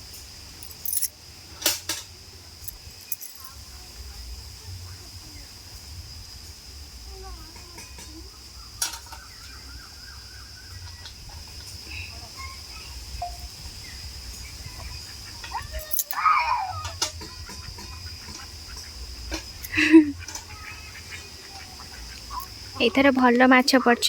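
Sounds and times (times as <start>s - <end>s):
high insect-like drone: 0.0s - 24.0s
faint bird calls: 8.1s - 23.1s.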